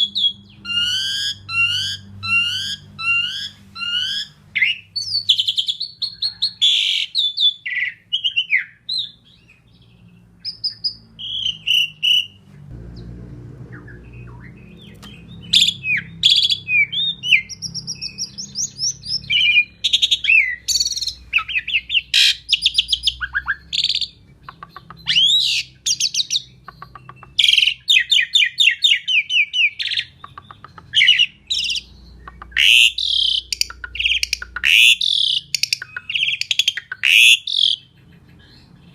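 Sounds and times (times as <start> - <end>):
starling singing: 0.0 - 12.4, 13.0 - 38.9
faint low rumble: 12.6 - 15.9.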